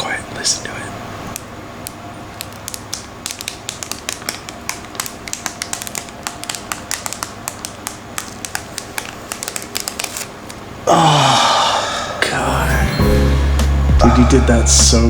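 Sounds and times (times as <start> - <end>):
plastic film peeling crackle: 1.4 - 10.6.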